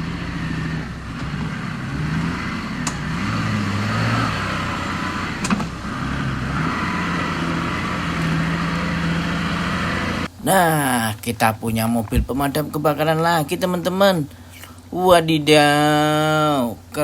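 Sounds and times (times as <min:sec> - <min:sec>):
toy motor revving: 0:00.0 - 0:10.3.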